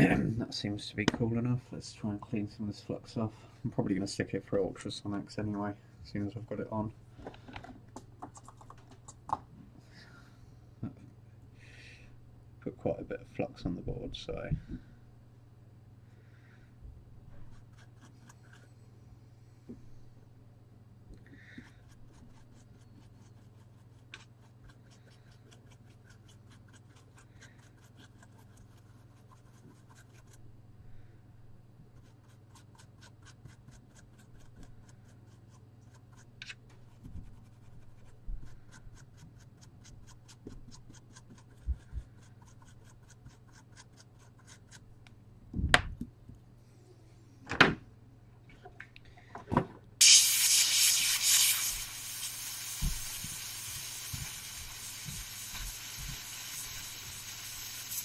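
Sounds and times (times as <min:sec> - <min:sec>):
fine brush scratching: 0:21.7 - 0:30.4.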